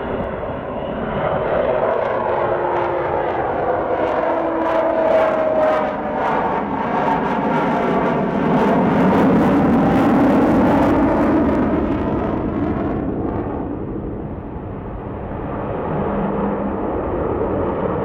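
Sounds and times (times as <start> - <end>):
loud rough jet noise: 0.0 - 18.0.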